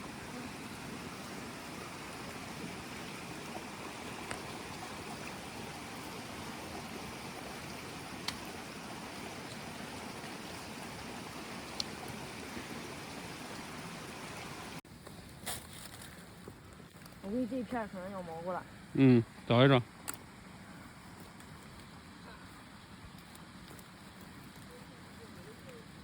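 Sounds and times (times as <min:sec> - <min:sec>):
faint sharp clicks: 0:20.0 - 0:20.2.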